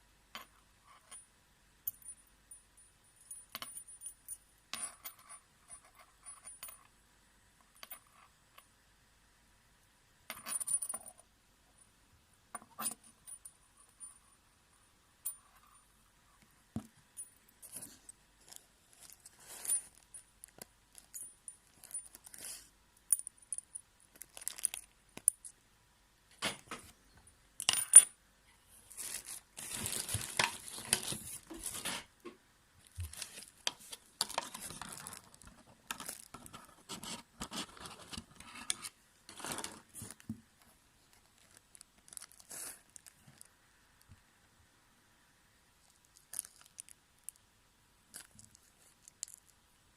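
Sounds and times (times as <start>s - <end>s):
packaging rustling: 28.8s - 32.0s.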